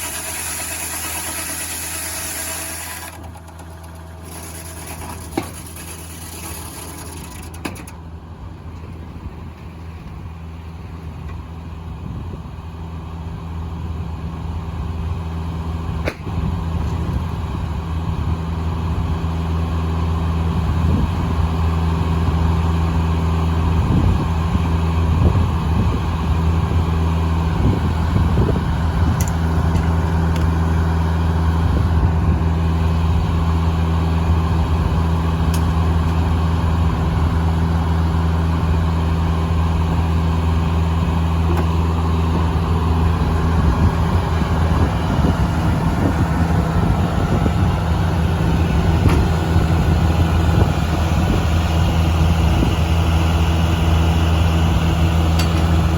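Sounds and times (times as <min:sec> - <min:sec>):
sawmill engine running steadily: 0:00.0 - 0:55.9.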